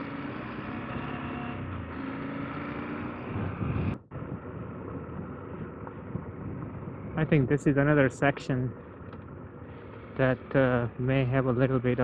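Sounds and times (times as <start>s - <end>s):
motorcycle engine running: 0.0s - 12.0s
wind noise: 3.2s - 7.6s.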